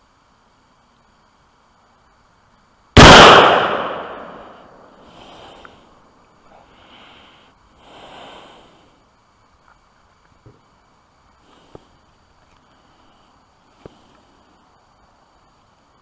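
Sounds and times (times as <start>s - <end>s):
rifle gunshot with echo: 3.0s - 4.7s.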